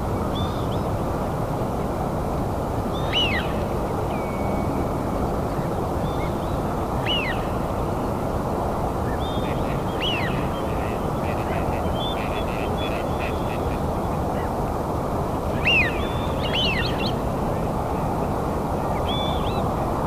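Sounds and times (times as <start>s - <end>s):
bird call: 3.0s - 4.7s, 7.0s - 7.6s, 9.1s - 14.5s, 15.6s - 17.2s.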